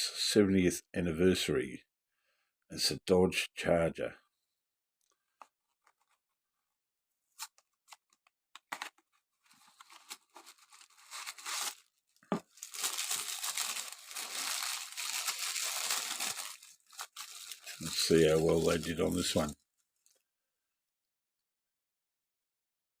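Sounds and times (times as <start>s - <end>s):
cardboard and plastic tearing: 8.7s - 19.5s.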